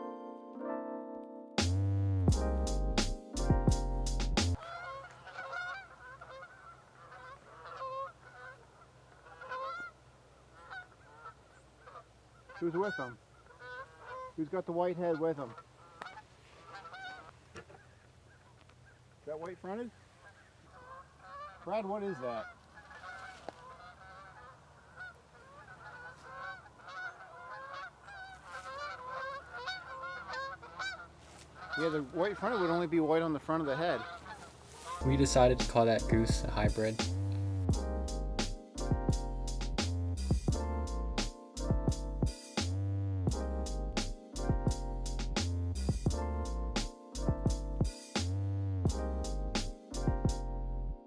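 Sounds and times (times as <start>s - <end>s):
geese honking: 4.5s - 37.7s.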